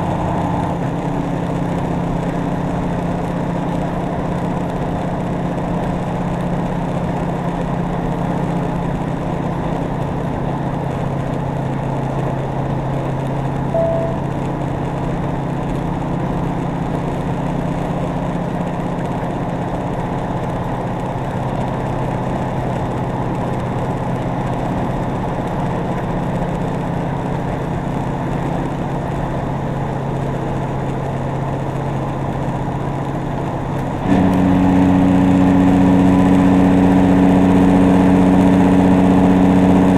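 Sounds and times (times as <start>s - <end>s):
diesel truck engine running: 0.0s - 8.5s.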